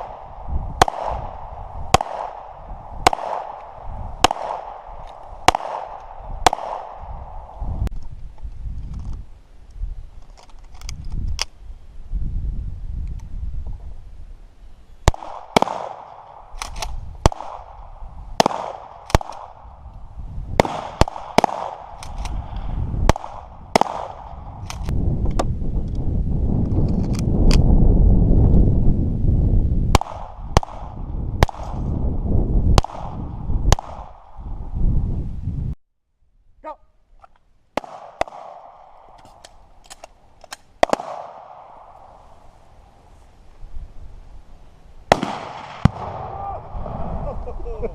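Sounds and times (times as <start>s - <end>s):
gunshots with short echo: 0.0s - 7.6s, 15.1s - 19.7s, 20.6s - 24.9s, 40.8s - 42.1s, 45.1s - 46.4s
wind rumble on microphone: 0.0s - 15.6s, 16.4s - 18.5s, 19.1s - 35.8s, 42.0s - 47.9s.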